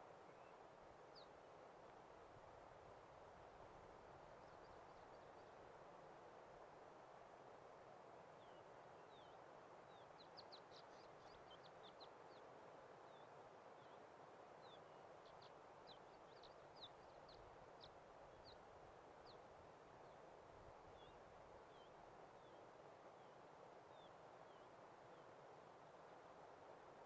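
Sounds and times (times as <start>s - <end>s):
faint open-air hiss: 0.0s - 27.0s
faint songbird chirps: 0.2s - 1.4s, 4.2s - 5.7s, 8.4s - 20.3s, 20.9s - 25.4s.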